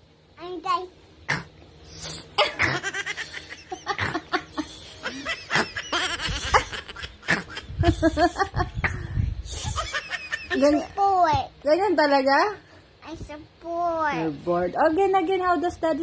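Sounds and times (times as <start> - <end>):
laughter: 2.4 - 8.9, 9.6 - 10.9.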